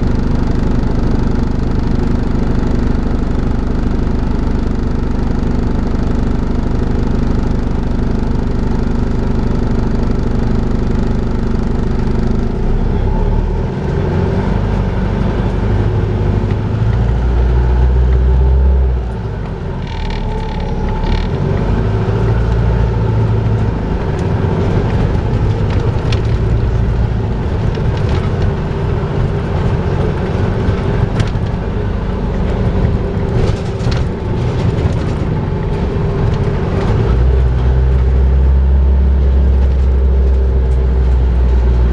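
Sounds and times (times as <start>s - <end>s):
bus engine droning: 0.0s - 41.9s
deep engine rumble: 0.0s - 41.9s.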